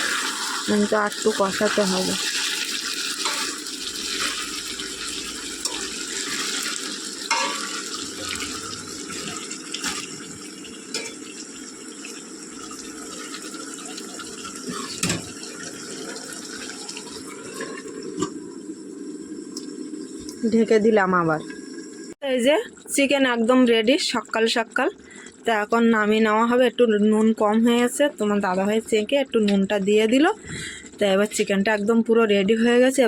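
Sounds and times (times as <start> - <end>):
chicken sizzling in oil: 0.0 - 22.2
spoon knocking against pan: 7.3 - 7.6.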